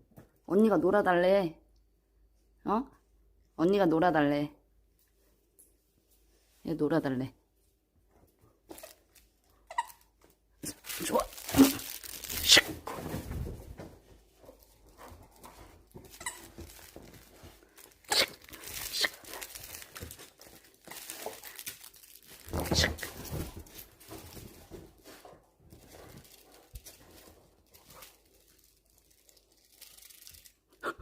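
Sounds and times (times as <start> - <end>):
rustling and scuffing: 10.6 - 28.2.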